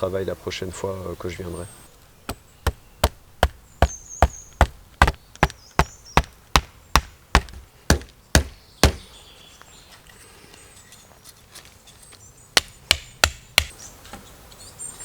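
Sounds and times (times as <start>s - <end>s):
tool striking wood: 2.3s - 9.1s, 12.6s - 13.7s.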